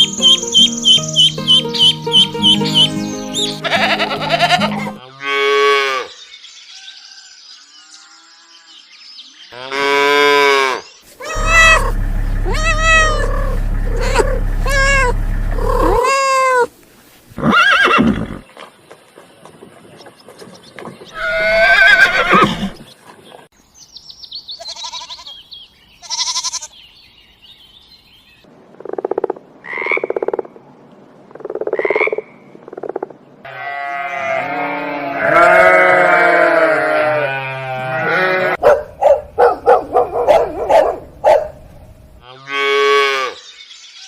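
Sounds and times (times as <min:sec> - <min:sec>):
animal calls: 0:10.7 - 0:16.7.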